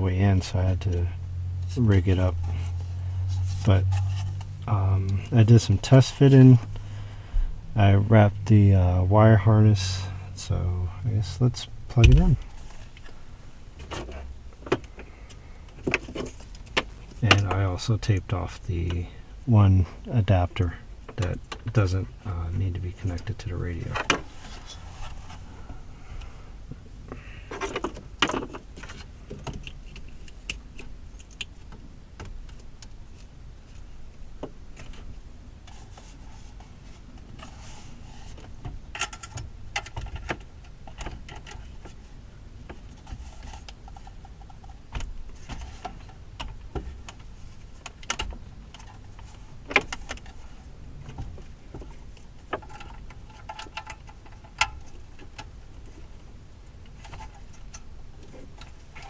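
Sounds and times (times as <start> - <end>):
low steady rumble: 0.0 - 59.0
wires and plastic connectors rustling: 9.7 - 19.0.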